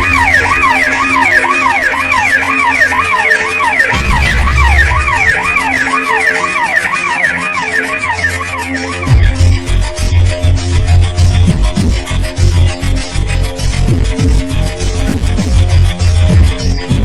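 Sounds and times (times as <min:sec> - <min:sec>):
siren sweeping up and down: 0:00.0 - 0:10.3
deep bass swell: 0:03.9 - 0:06.2.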